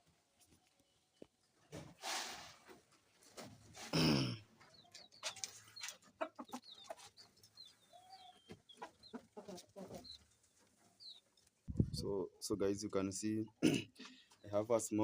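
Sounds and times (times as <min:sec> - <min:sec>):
chickens clucking: 0:02.6 - 0:12.4.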